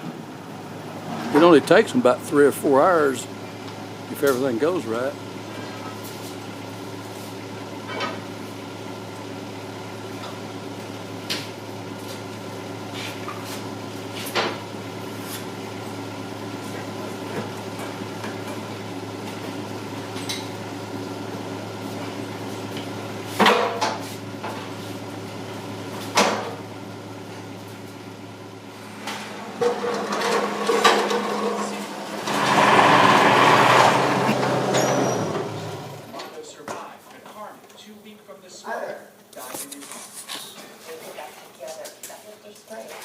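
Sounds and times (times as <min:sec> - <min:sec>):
steady machine hum: 0:00.0 - 0:12.9, 0:24.2 - 0:36.2.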